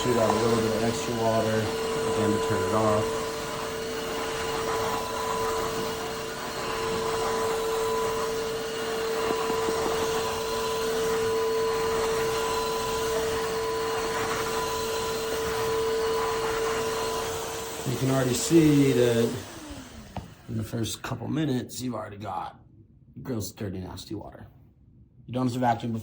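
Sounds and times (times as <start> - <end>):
suction rush: 0.0 - 20.2
vacuum mop motor whine: 0.0 - 21.0.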